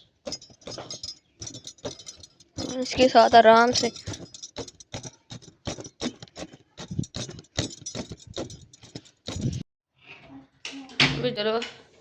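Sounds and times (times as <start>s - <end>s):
knife snipping cords: 0.3s - 9.6s.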